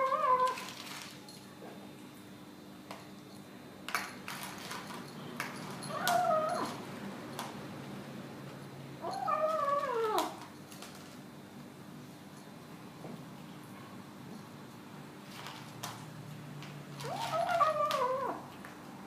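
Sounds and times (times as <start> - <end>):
cat moaning meows: 0.0 - 0.6, 5.9 - 6.8, 9.0 - 10.4, 17.0 - 18.5.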